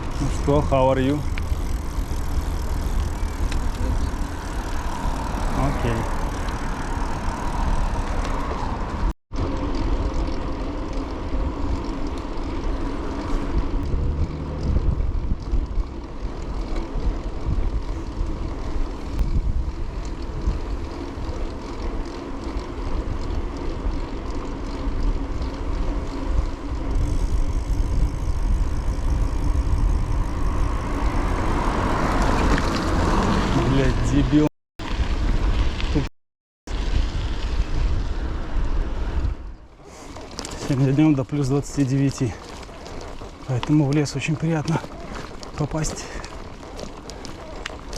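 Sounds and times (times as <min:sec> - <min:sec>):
bicycle tyre and road noise: 0:00.0 - 0:47.9
wind buffeting microphone: 0:12.5 - 0:34.4.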